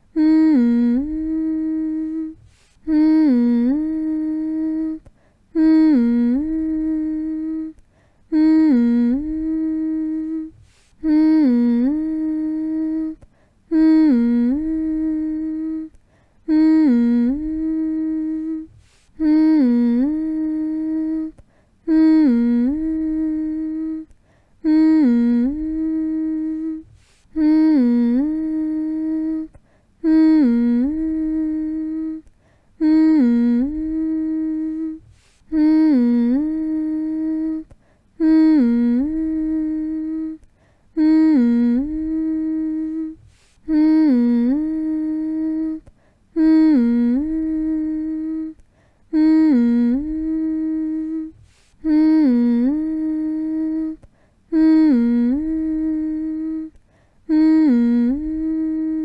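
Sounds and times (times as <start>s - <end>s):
person humming long steady note: 0.0s - 59.0s.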